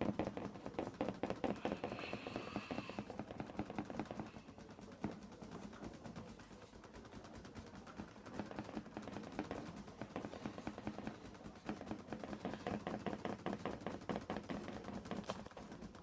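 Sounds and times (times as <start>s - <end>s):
faint steady hum: 0.0s - 7.2s.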